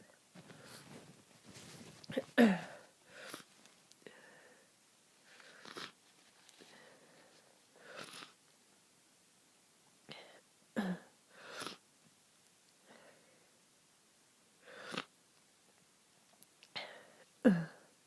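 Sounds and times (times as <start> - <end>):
person sneezing: 2.1 - 3.5, 16.8 - 17.9
person sniffling: 2.1 - 4.6, 5.4 - 6.0, 6.6 - 8.4, 10.1 - 11.8, 14.6 - 15.1
short breath: 2.7 - 4.7.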